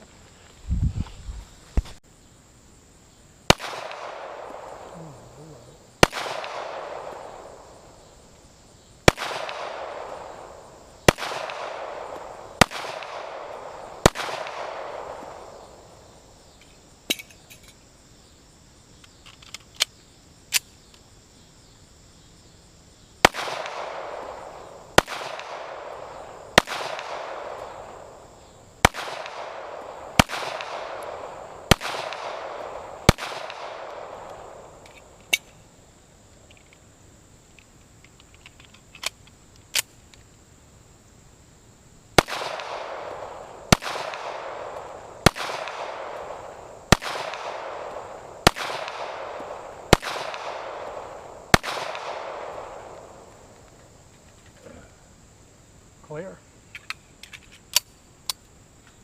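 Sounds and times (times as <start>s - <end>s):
gunshots with rolling echo: 3.5s - 8.3s, 9.0s - 16.3s, 23.2s - 35.5s, 42.2s - 53.6s.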